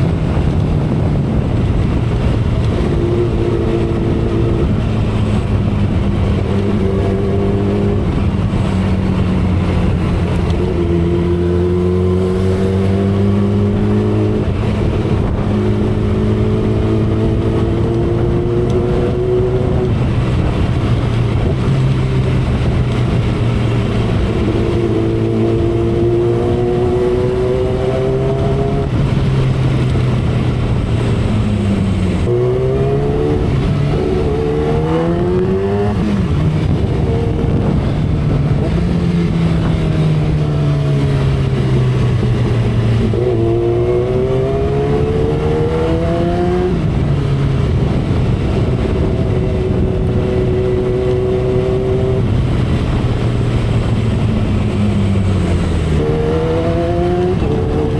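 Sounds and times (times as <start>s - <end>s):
motorcycle engine and exhaust: 0.0s - 57.9s
wind and road rush: 0.0s - 57.9s.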